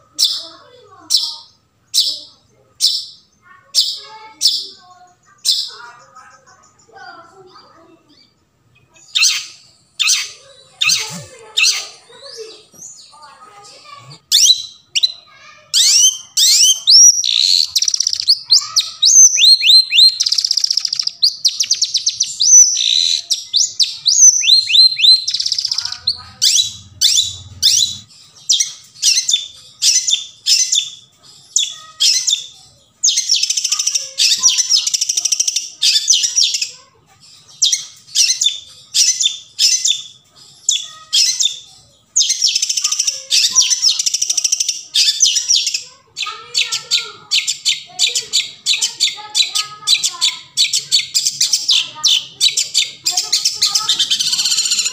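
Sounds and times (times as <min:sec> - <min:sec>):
harsh rasping bird calls: 0:00.0 - 0:54.9
shrike whistling song: 0:15.8 - 0:31.0.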